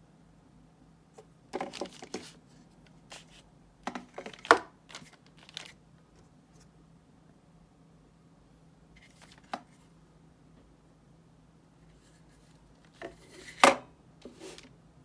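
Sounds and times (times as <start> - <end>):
packaging crinkling and clicking: 4.0 - 5.8.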